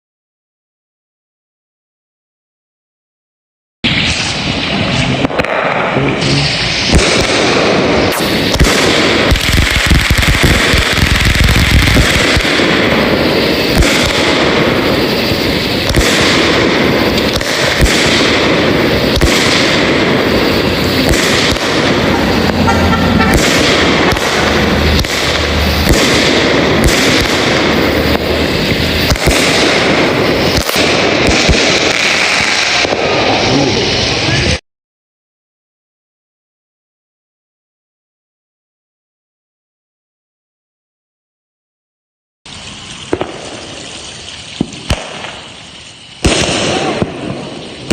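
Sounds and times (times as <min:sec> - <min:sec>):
fireworks barrage: 0:03.8 - 0:34.6, 0:42.5 - 0:47.9.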